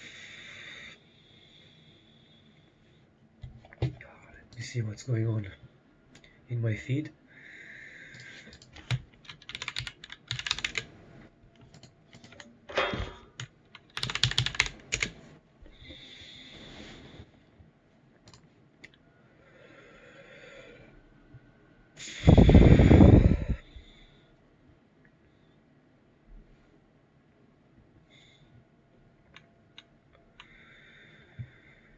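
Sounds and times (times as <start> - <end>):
computer keyboard typing: 8.1 - 10.9, 11.6 - 12.5, 13.4 - 15.2
loud burst of noise: 22.0 - 23.6.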